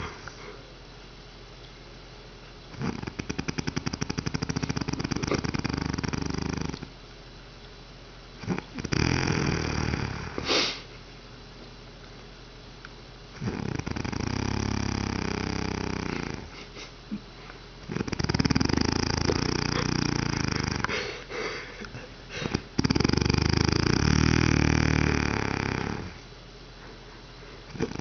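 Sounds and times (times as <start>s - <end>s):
loud snoring: 2.8s - 6.9s, 8.4s - 10.8s, 13.4s - 16.6s, 17.9s - 21.1s, 22.4s - 26.2s, 27.7s - 28.0s.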